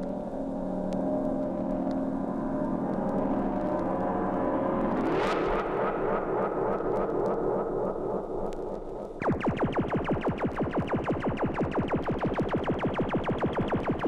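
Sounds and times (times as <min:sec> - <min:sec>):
fast downward-sweeping tones: 0:09.2 - 0:14.0.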